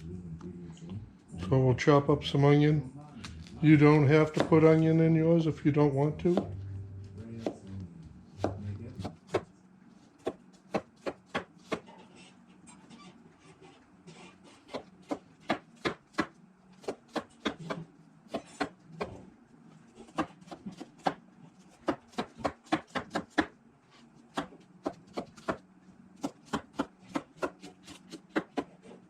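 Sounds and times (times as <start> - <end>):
knife chopping on wooden board: 4.2 - 4.7, 7.4 - 7.6, 20.0 - 23.5, 24.3 - 25.6, 26.2 - 28.8.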